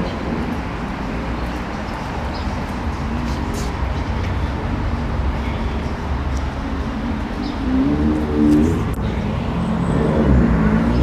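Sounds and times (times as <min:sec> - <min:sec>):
traffic rumble: 0:00.0 - 0:11.0.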